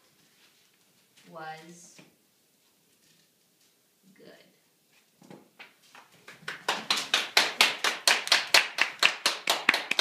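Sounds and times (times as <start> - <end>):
hands clapping: 5.6 - 10.0.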